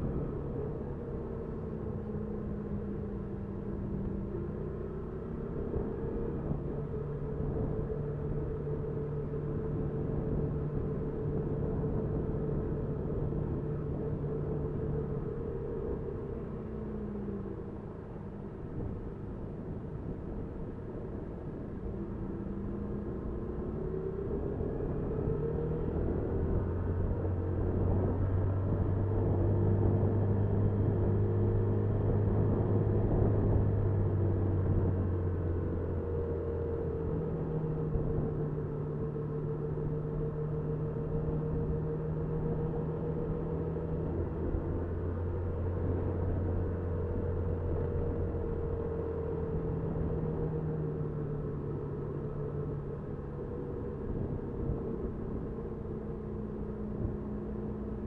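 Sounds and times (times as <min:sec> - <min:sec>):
road and wind noise: 0:00.0 - 0:58.0.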